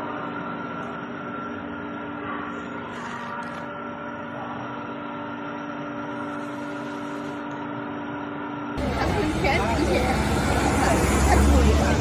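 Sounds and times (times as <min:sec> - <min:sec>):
steady tonal hum: 0:00.0 - 0:12.0
continuous background noise: 0:08.8 - 0:12.0.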